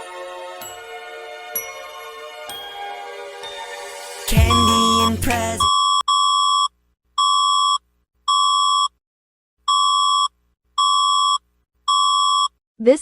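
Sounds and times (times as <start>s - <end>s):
electronic music sting: 3.8s - 5.7s
buzzy electronic alert beeps: 4.4s - 5.3s.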